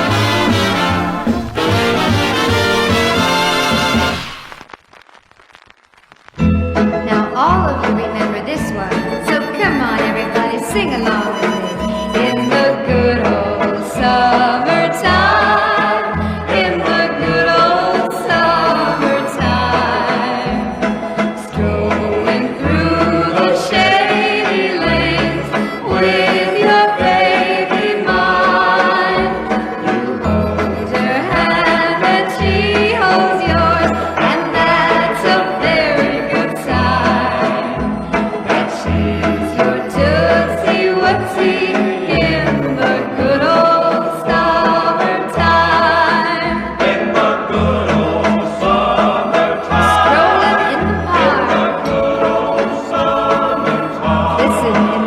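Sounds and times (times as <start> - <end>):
band playing: 0.0 - 4.6, 8.7 - 13.1
chorus of voices singing: 11.3 - 55.0.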